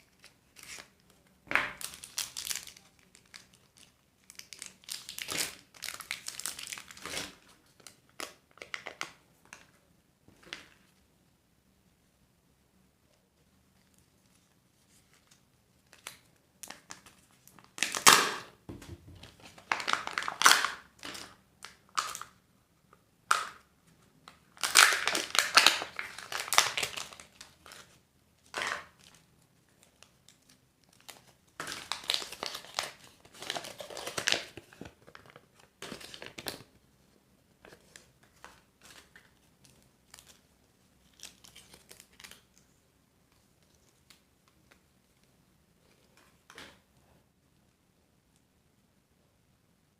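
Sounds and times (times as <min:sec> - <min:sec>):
wrappers crinkling and tearing: 0:01.8 - 0:09.1, 0:24.6 - 0:29.2, 0:29.8 - 0:36.7, 0:37.7 - 0:42.6.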